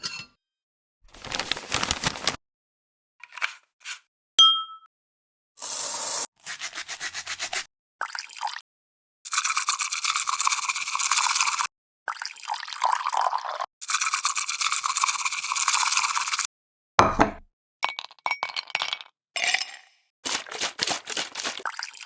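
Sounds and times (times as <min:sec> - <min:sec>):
bamboo whisk swishing: 0:20.3 - 0:21.7.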